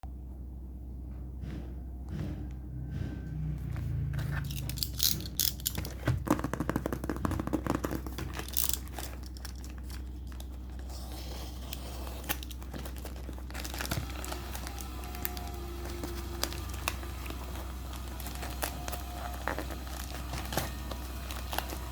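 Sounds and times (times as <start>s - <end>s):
packaging crinkling and tearing: 4.4s - 21.9s.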